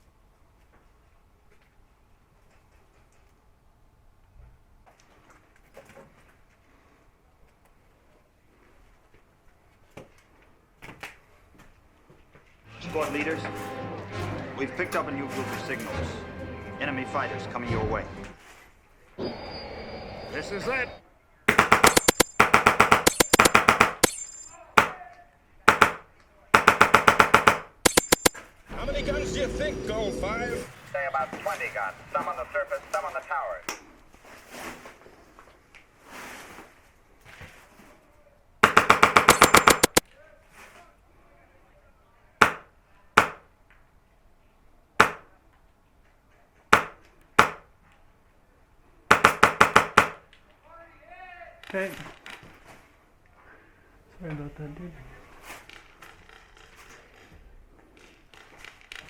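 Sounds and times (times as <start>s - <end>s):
airsoft gun automatic bursts: 21.5s - 24.2s, 25.7s - 26.0s, 26.6s - 28.4s, 38.6s - 40.0s, 49.1s - 50.2s.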